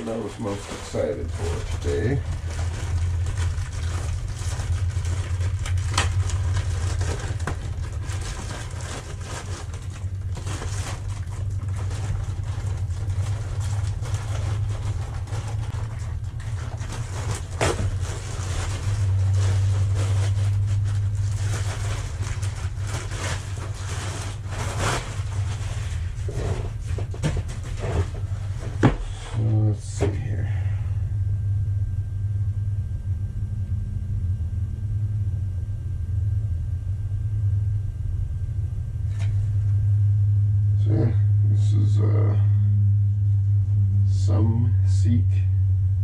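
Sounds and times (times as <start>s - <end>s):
packaging crinkling: 0.0s - 29.0s
low hum: 0.0s - 46.0s.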